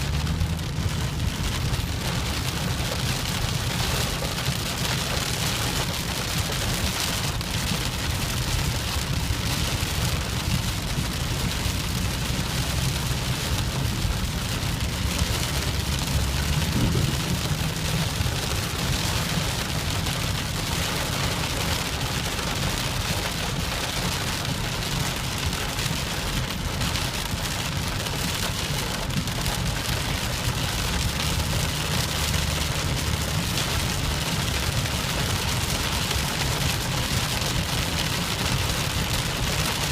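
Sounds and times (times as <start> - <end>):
steady rain falling: 0.0 - 39.9
low rumble: 8.8 - 20.4.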